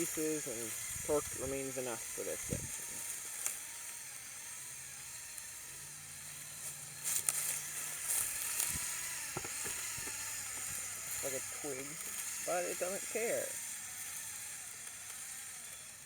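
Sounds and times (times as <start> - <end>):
toy car motor whirring: 0.0 - 16.0
sharp clicks and crackles: 3.0 - 3.6, 7.1 - 13.0, 14.0 - 15.9.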